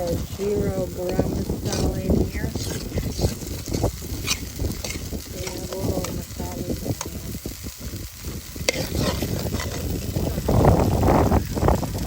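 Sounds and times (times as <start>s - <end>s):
spices sizzling in hot oil: 0.0s - 12.0s
spoon scraping pot bottom: 1.0s - 6.4s, 8.6s - 9.9s.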